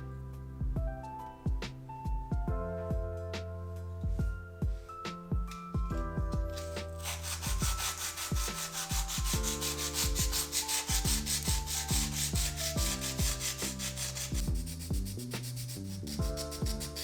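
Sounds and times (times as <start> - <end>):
background music with steady beat: 0.0 - 17.0
hand sanding strokes: 6.6 - 17.0.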